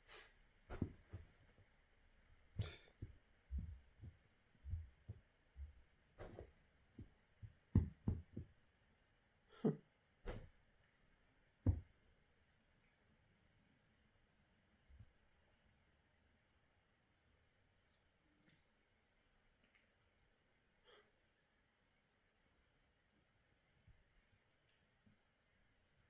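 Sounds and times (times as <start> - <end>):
animals tussling on floor: 0.7 - 8.5.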